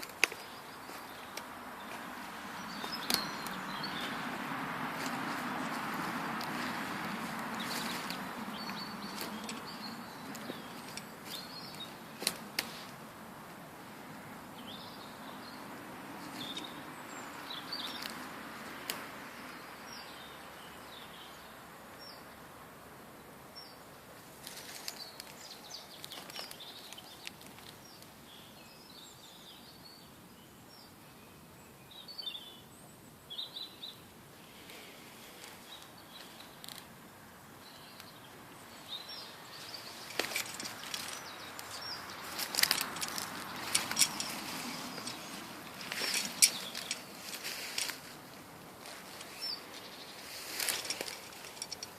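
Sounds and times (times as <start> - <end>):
birds chirping and singing: 0.0 - 12.9, 14.6 - 18.2, 37.6 - 51.9
sharp clicks and rustles: 7.3 - 13.0, 39.8 - 48.2, 50.3 - 51.9.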